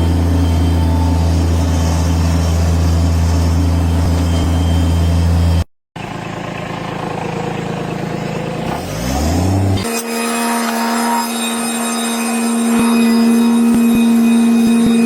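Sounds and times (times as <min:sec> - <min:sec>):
quieter engine sound: 0:00.0 - 0:09.9
vehicle engine humming: 0:00.0 - 0:09.9.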